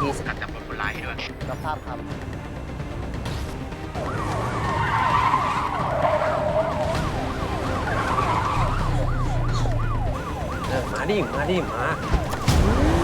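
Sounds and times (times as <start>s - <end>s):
police siren yelping: 4.0s - 13.0s.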